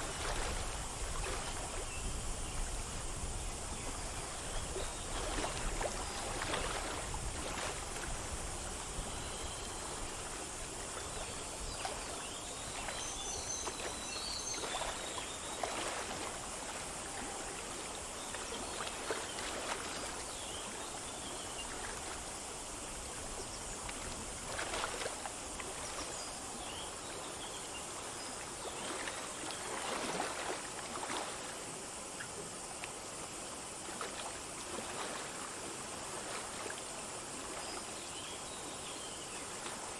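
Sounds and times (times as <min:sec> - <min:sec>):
stream flowing over stones: 0:00.0 - 0:39.9
faint bird chirps: 0:11.2 - 0:15.9.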